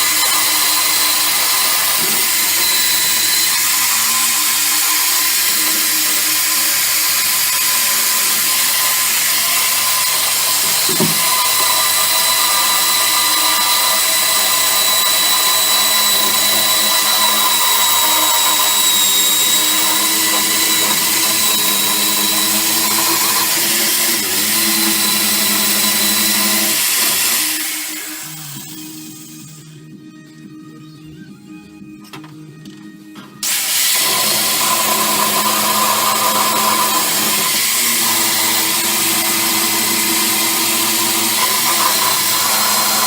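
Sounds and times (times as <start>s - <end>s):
power tool grinding: 0.0s - 29.7s, 33.4s - 43.0s.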